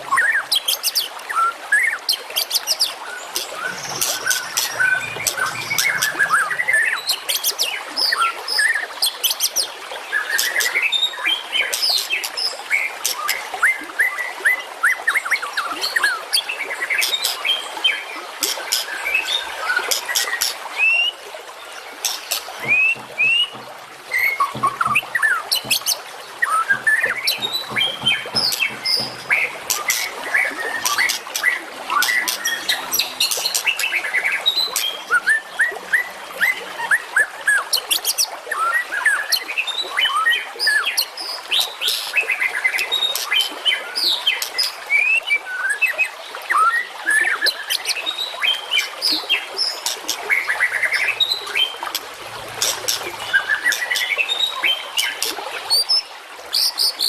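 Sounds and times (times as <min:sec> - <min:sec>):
songbirds chirping: 0:03.1 - 0:08.2, 0:21.6 - 0:38.0, 0:48.2 - 0:56.0.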